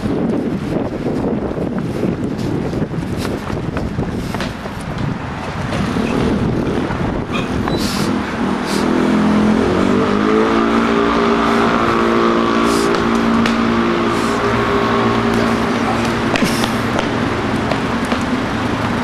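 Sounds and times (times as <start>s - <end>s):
vehicle engine rumble: 0.0s - 19.0s
steady motor hum: 8.2s - 19.0s.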